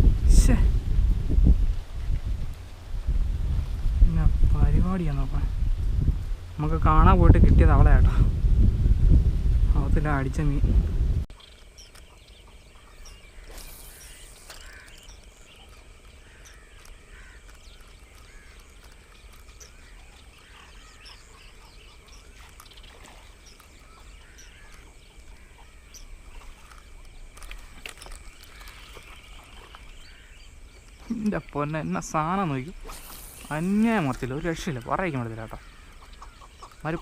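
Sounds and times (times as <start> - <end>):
low wind rumble: 0.0 - 31.0
small animals chirping: 11.3 - 30.2.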